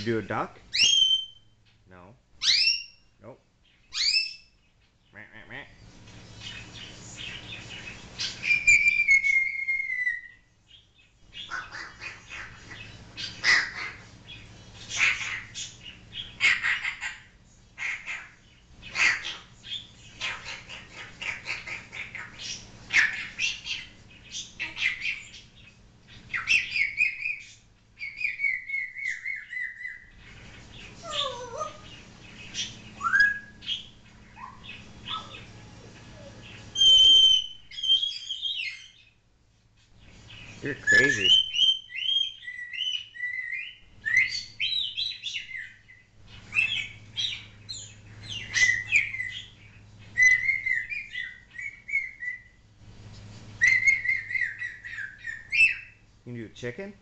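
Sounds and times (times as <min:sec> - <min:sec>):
parrot squawking and whistling: 0:00.7 - 0:01.5, 0:02.4 - 0:03.0, 0:03.9 - 0:04.5, 0:08.2 - 0:10.4, 0:16.4 - 0:19.5, 0:20.2 - 0:25.4, 0:26.3 - 0:30.2, 0:31.0 - 0:39.0, 0:40.7 - 0:45.8, 0:46.5 - 0:49.5, 0:50.2 - 0:52.6, 0:53.6 - 0:56.0.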